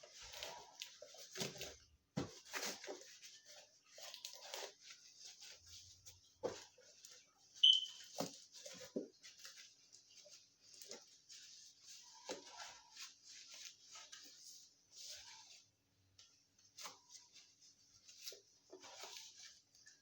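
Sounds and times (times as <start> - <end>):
rustling and rubbing toy box: 0.0 - 20.0
high squeak: 7.6 - 8.0.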